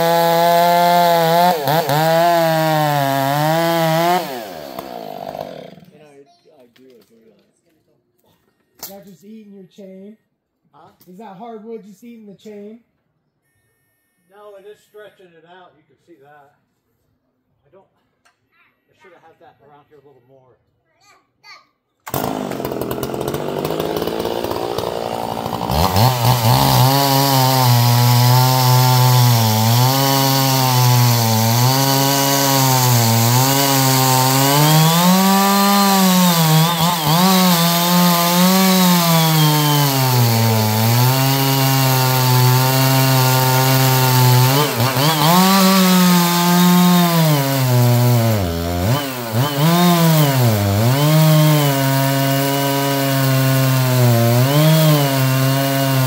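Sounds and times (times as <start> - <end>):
chainsaw cutting wood: 0.0 - 6.1, 22.0 - 56.0.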